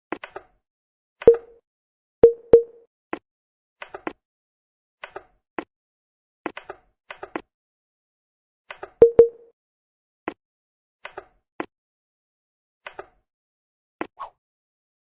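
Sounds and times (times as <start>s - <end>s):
double click with ringing tone: 1.3s - 1.5s, 9.0s - 9.5s.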